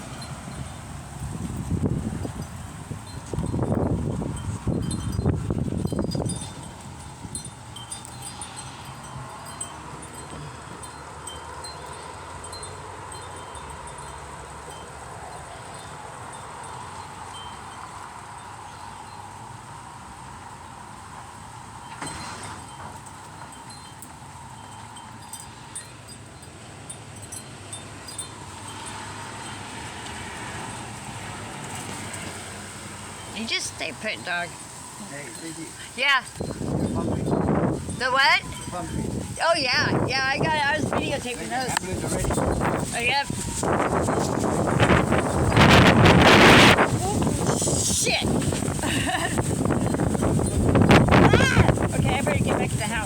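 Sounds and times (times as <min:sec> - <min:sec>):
wind gust on microphone: 0:00.0 - 0:18.5, 0:27.9 - 0:53.0
wind chimes tinkling: 0:00.0 - 0:53.0
wind rushing: 0:36.2 - 0:53.0.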